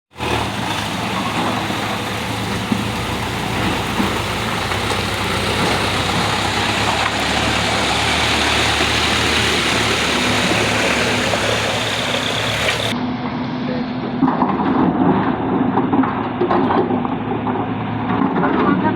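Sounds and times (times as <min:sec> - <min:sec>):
diesel engine droning: 0:00.1 - 0:14.2.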